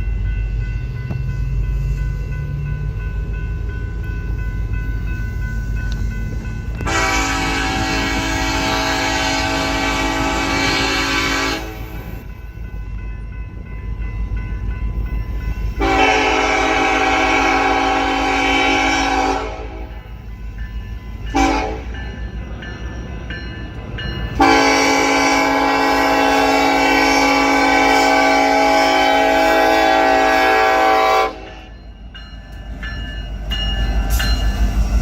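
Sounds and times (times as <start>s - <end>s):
low train rumble: 0.0s - 35.0s
locomotive air horn blasts: 6.7s - 12.1s, 15.8s - 20.1s, 21.3s - 22.0s, 24.4s - 31.7s.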